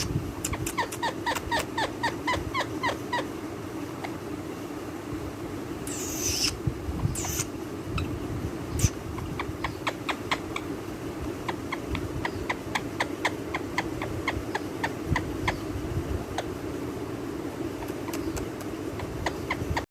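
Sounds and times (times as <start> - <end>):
steady low hum: 0.0 - 19.9
parrot clicking chirps: 0.4 - 2.4, 17.8 - 19.4
parrot shrill calls: 5.9 - 7.5.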